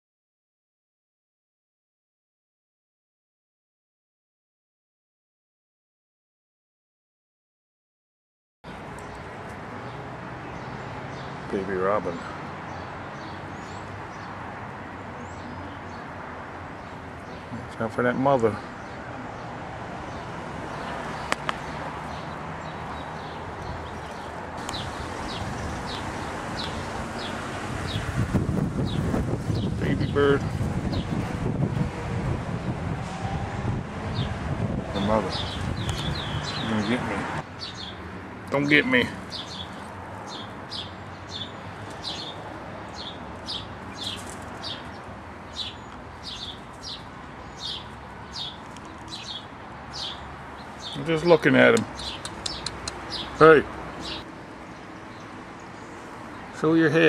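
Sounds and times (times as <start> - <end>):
robin alarm calls: 20.1 - 28.2, 35.3 - 36.9, 37.6 - 54.3
sharp clicks: 51.7 - 53.2.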